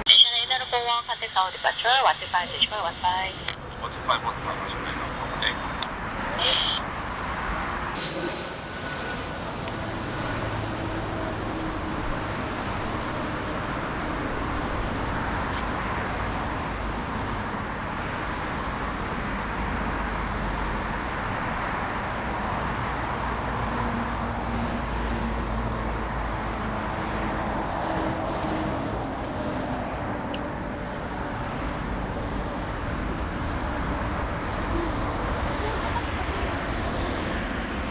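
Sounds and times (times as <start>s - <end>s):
jet engines roaring: 0.0s - 37.9s.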